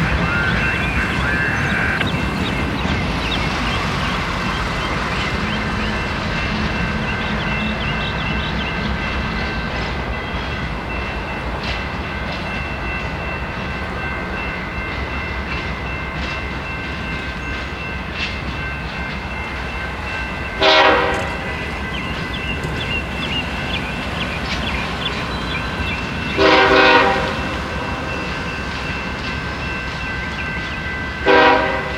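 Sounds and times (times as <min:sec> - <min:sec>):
diesel locomotive rumbling: 0:00.0 - 0:31.9
train horn blast: 0:20.6 - 0:21.5, 0:26.4 - 0:28.3, 0:31.2 - 0:31.9.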